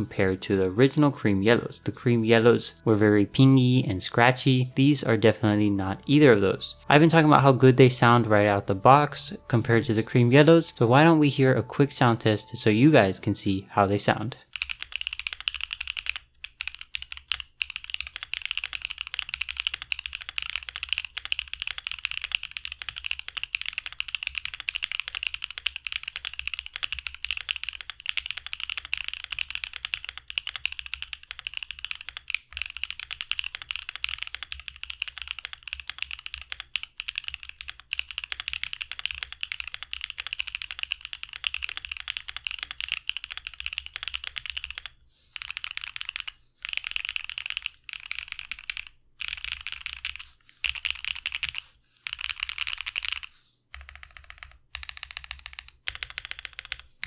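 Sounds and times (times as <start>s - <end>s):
mechanical keyboard typing: 13.9s - 57.0s.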